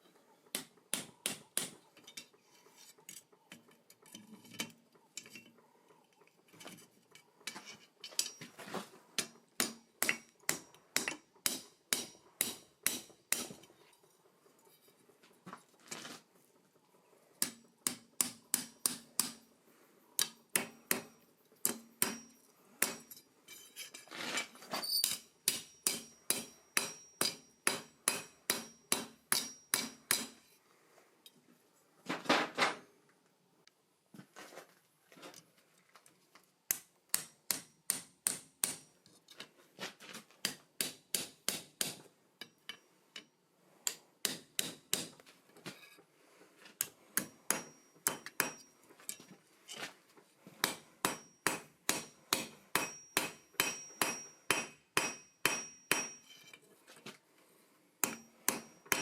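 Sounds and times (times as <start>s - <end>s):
hammer striking steel on anvil: 9.2s - 13.7s, 17.4s - 19.5s, 20.2s - 23.2s, 25.0s - 30.5s, 36.7s - 38.9s, 40.4s - 45.2s, 46.8s - 49.3s, 50.6s - 56.5s, 58.0s - 59.0s.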